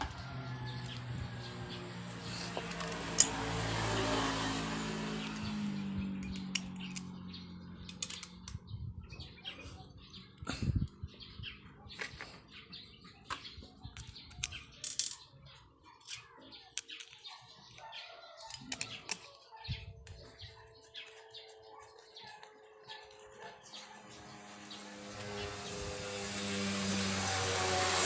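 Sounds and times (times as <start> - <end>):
birds chirping: 0.0 - 28.0
clicks of tools and engine parts: 2.4 - 3.4, 6.2 - 7.2, 7.8 - 8.6, 13.1 - 15.3, 16.0 - 17.8, 18.4 - 19.4.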